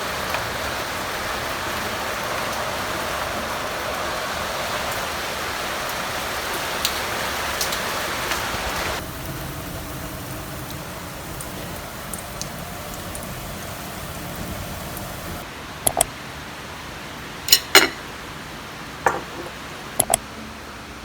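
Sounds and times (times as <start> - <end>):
sharp water drips: 0.0 - 16.1, 20.0 - 20.2
rain falling steadily: 0.0 - 21.0.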